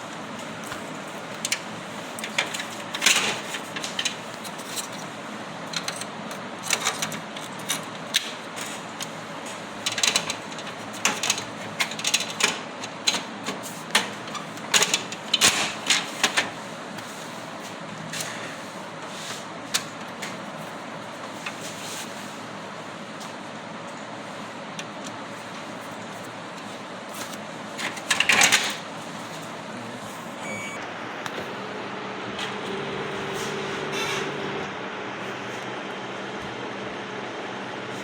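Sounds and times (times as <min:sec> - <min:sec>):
printer humming: 0:22.1 - 0:38.0.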